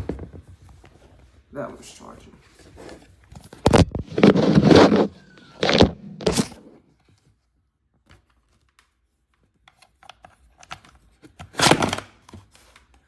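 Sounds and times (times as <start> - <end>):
rustling clatter of objects: 0.0 - 1.5, 2.4 - 7.4.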